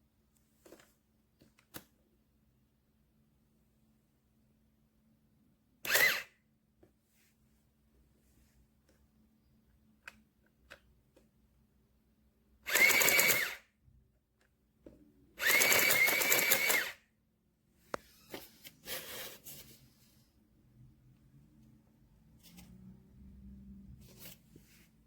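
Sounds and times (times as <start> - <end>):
tape printer whirring: 15.4 - 17.0.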